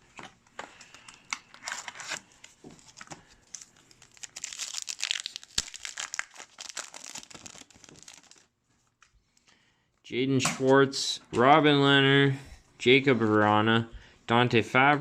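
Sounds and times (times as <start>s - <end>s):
plastic wrapper crinkling and tearing: 0.8s - 9.5s.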